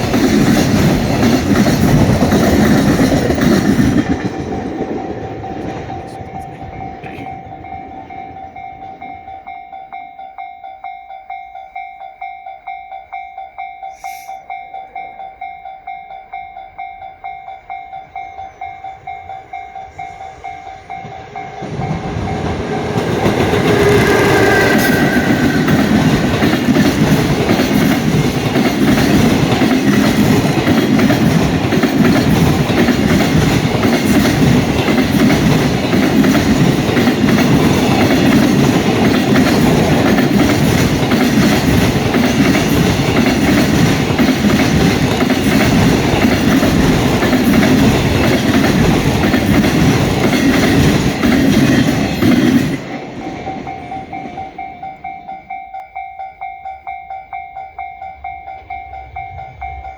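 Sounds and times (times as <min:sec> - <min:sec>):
wheel clickety-clack: 0:00.0 - 0:09.1, 0:20.9 - 0:55.1
level-crossing bell clanging: 0:00.0 - 0:59.9
train rumble: 0:00.0 - 0:59.9.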